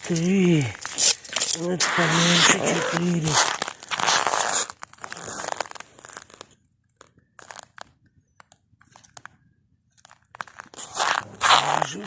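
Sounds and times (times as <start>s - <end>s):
snow crunching: 0.0s - 6.4s, 10.4s - 12.0s.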